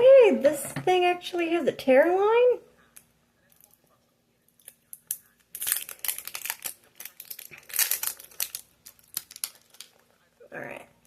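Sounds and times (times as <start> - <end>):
wrapper crinkling and ripping: 4.6 - 10.3.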